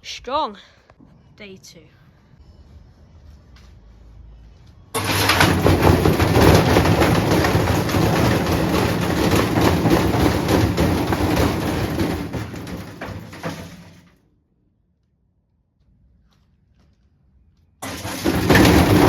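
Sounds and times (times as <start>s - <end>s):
washing machine clattering and banging: 5.0s - 14.1s, 17.8s - 19.0s.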